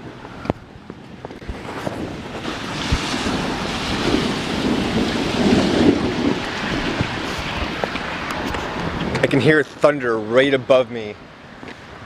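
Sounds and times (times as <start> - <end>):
thunder rumbling: 0.0 - 9.4
rain hissing: 0.0 - 10.4.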